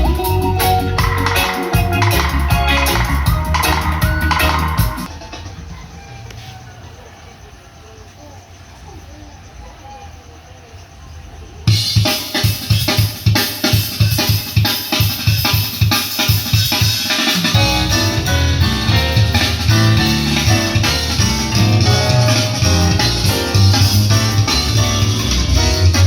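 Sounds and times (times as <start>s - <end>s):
heavy bass line: 0.0s - 5.1s, 17.4s - 26.0s
drum beat: 0.0s - 5.4s, 11.7s - 26.0s
guitar: 0.0s - 5.5s, 17.3s - 26.0s.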